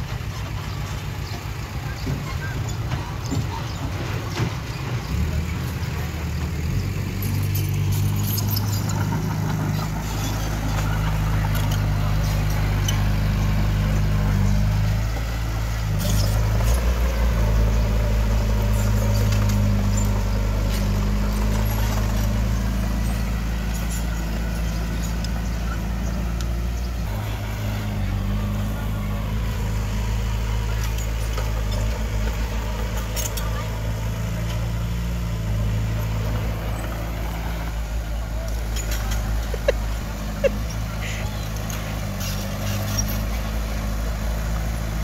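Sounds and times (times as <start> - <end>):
heavy diesel engine running: 0.0 - 45.0.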